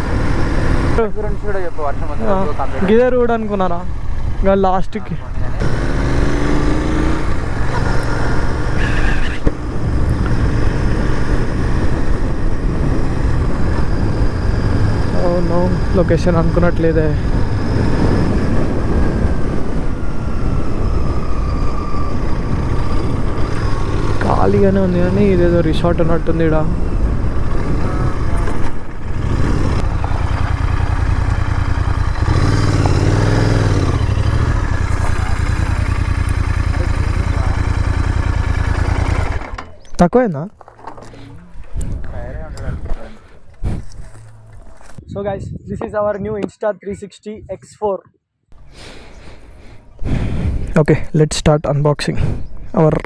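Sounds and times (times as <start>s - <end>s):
motorcycle engine running: 0.0s - 39.9s
wind and road noise: 0.0s - 53.0s.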